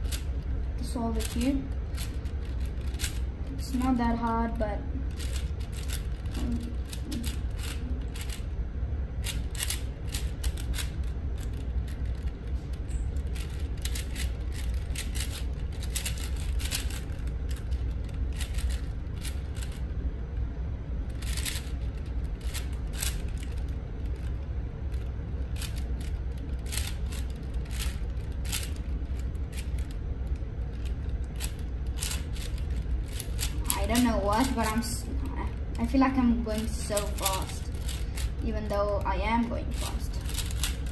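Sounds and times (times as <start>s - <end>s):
steady low hum: 0.0s - 40.9s
plastic puzzle cube clicking: 2.0s - 3.2s, 9.2s - 12.3s, 13.3s - 19.8s, 21.2s - 23.7s, 25.6s - 29.9s, 40.2s - 40.8s.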